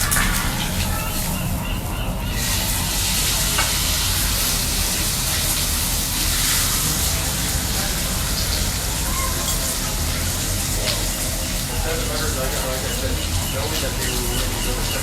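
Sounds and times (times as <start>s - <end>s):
steak sizzling in fat: 2.8s - 11.8s.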